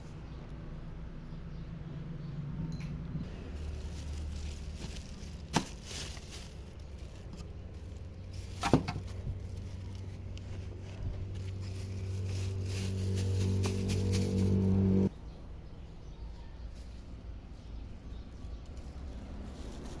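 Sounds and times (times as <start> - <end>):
steady low hum: 1.8 - 15.1.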